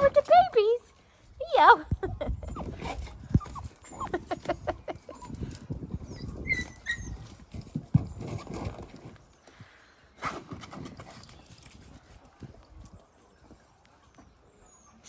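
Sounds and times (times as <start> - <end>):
puppies whining: 2.3 - 7.6, 14.0 - 15.0
high squeaks: 6.1 - 7.5
scuffling and knocks: 7.1 - 9.4.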